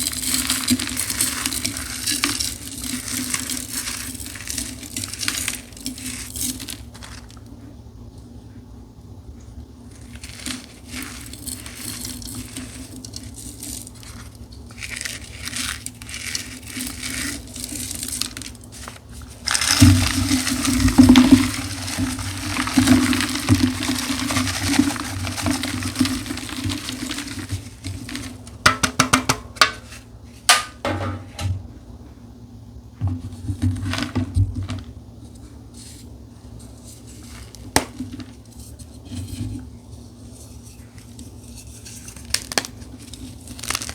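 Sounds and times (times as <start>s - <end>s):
chalk crunching and crumbling: 0.0s - 7.6s, 9.9s - 28.6s, 35.2s - 43.9s
sharp snaps and crackles: 41.8s - 43.9s.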